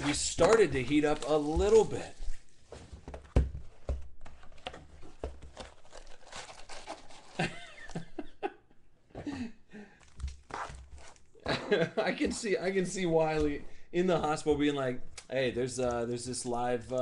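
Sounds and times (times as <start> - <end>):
cards clicking and rustling: 0.0 - 2.3
foil wrappers crinkling and tearing: 0.0 - 2.6, 5.5 - 7.5.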